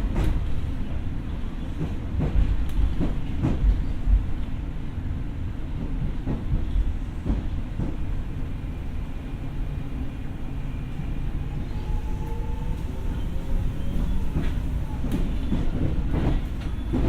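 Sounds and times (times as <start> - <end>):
train rumbling on rails: 0.0 - 17.0
faint train whine: 6.8 - 17.0
rail-joint clicks: 11.7 - 17.0.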